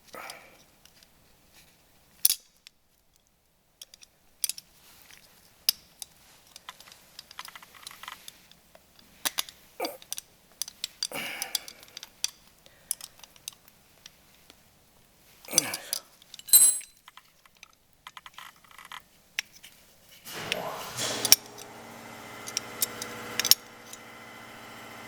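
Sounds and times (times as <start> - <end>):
hand tools clicking and knocking: 20.3 - 21.7, 22.4 - 24.1.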